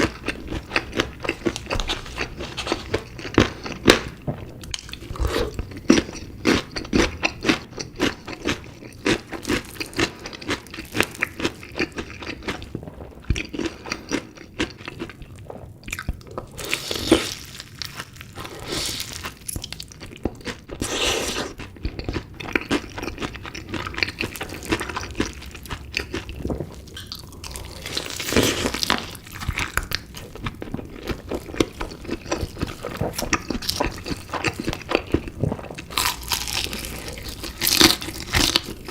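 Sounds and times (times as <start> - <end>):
crunching bites and chewing: 0.0 - 38.9.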